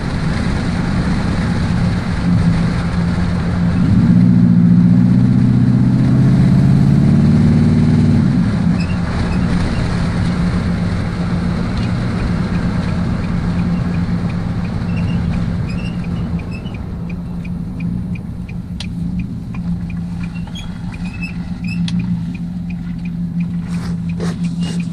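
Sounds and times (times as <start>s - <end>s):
truck engine idling: 8.2s - 24.9s.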